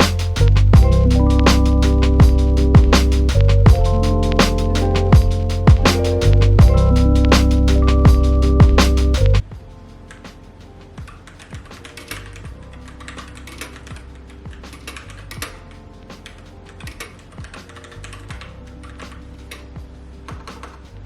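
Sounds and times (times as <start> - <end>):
quiet background music: 0.0 - 21.0
typing on a keyboard: 11.3 - 14.0, 16.2 - 19.6.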